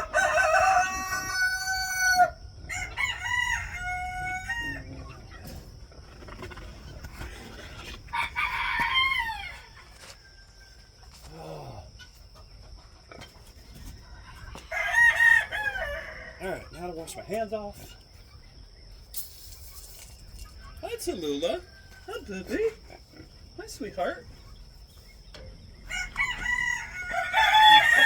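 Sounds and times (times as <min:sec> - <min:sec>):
roosters crowing: 0:00.0 - 0:12.3, 0:13.0 - 0:16.9, 0:21.0 - 0:23.4, 0:24.4 - 0:28.0
hens clucking: 0:00.0 - 0:28.0.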